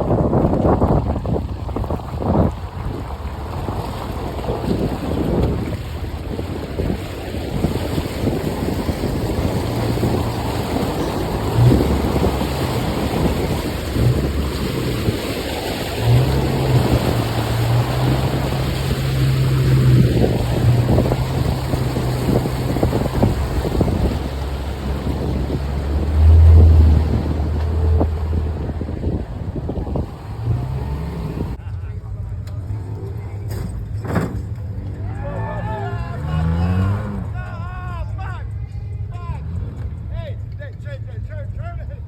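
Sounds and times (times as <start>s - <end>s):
wind buffeting microphone: 0.0s - 31.6s
car engine droning: 0.0s - 42.0s
knocks and rattles over rough ground: 32.3s - 35.0s.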